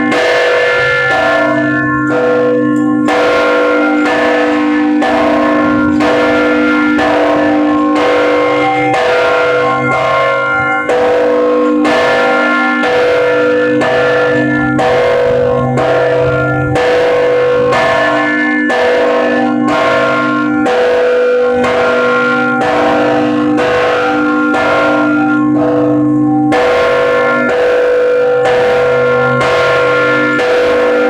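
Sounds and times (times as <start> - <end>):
church bells ringing: 0.0 - 31.0.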